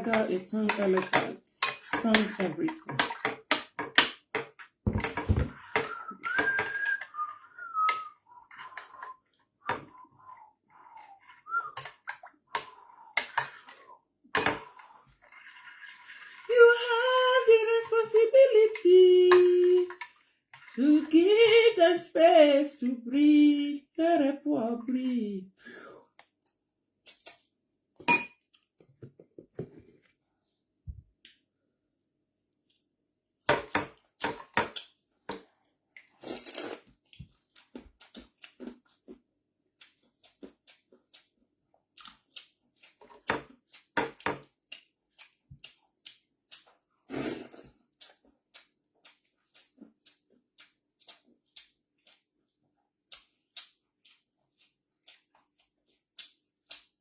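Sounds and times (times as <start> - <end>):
utensils tapping dishes: 0.1 - 6.8
chewing and crunching: 33.8 - 57.0.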